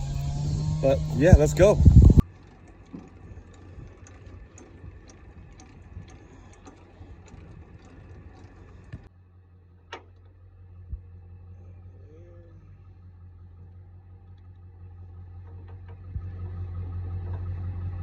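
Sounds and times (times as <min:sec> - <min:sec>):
low vehicle rumble: 0:00.0 - 0:18.0
light ticks and clicks: 0:02.1 - 0:09.1.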